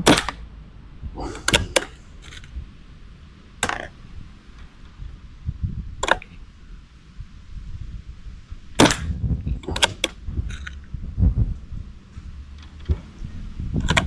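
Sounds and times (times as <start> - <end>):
faint clicks: 0.0 - 14.0
wind rumble on microphone: 0.0 - 14.0
air pistol shots: 3.6 - 4.8, 8.8 - 9.2.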